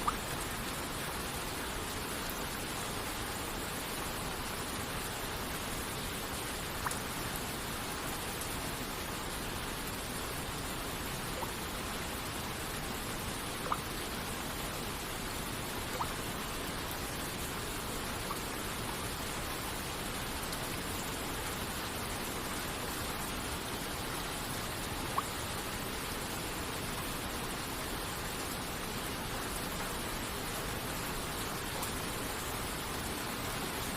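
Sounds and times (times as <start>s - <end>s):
water droplets plinking: 0.0s - 0.2s, 6.8s - 7.0s, 13.6s - 13.8s, 15.9s - 16.2s, 25.1s - 25.4s
rain rushing: 0.0s - 33.9s.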